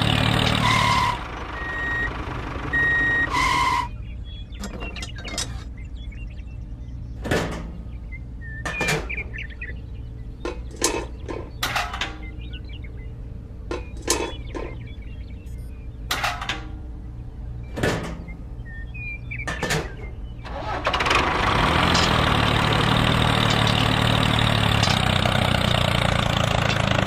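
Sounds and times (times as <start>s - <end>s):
low motor hum: 0.0s - 27.0s
reversing alarm beeping: 0.6s - 4.0s
sharp clicks and knocks: 13.7s - 14.8s.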